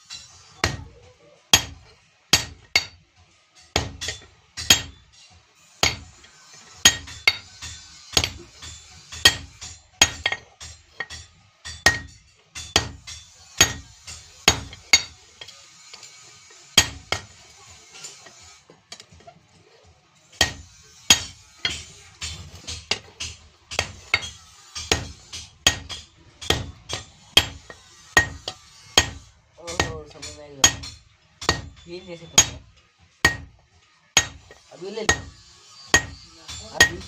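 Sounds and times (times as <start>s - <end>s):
hammer striking steel on anvil: 0.0s - 3.0s, 3.6s - 19.3s, 20.3s - 37.0s.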